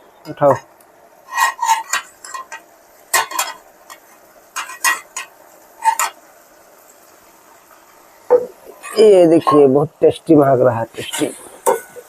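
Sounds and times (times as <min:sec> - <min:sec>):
metal spoon scraping a pot: 0:00.3 - 0:06.2, 0:08.7 - 0:09.7, 0:11.0 - 0:12.0.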